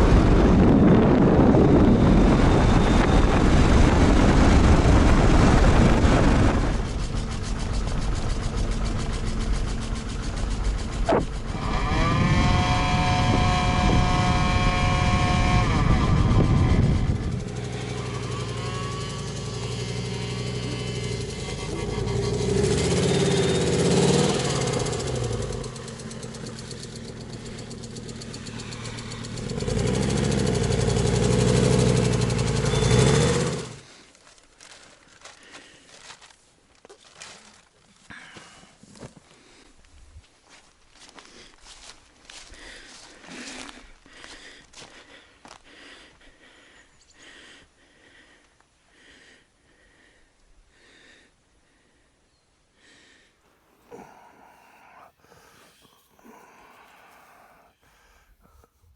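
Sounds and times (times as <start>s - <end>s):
engine idling: 1.7s - 33.9s
breathing through a snorkel: 52.8s - 58.9s.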